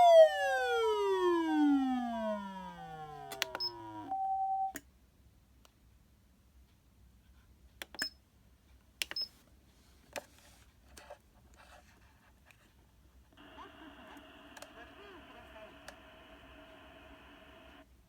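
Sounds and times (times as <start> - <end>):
short high beep: 3.2 - 4.8
faint tinny voice: 13.4 - 17.5.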